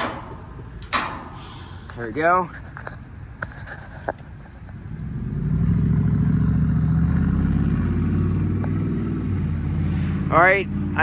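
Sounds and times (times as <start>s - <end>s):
vehicle engine running: 4.6s - 11.0s.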